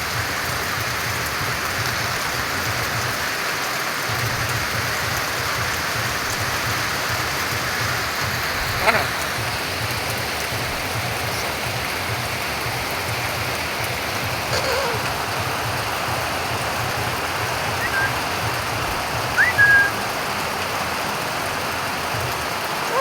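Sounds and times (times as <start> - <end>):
steady rain falling: 0.0 - 23.0
bird whistled chirps: 17.7 - 18.2, 19.4 - 20.1.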